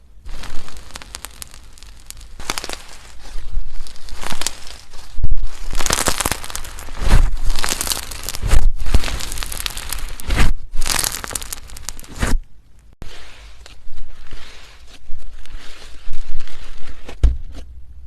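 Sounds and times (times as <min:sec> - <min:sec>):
slime crackling and popping: 0:00.2 - 0:13.0.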